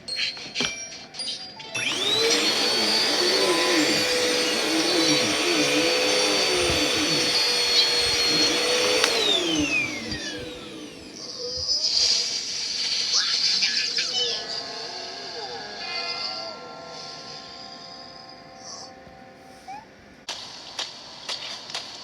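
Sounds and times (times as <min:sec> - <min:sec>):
vacuum cleaner running: 0:01.8 - 0:12.2.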